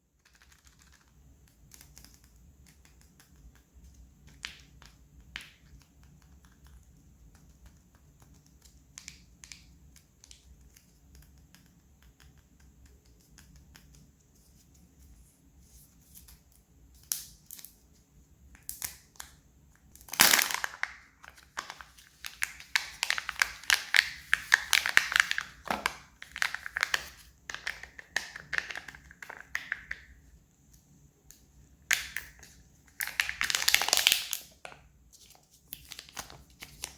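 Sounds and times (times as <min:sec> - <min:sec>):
foil wrapper crinkling and tearing: 0:20.0 - 0:28.9, 0:33.0 - 0:36.9.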